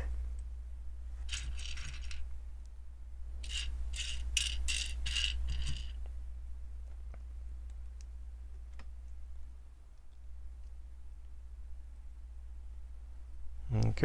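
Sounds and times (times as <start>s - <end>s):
plastic pieces clattering: 1.3s - 2.2s.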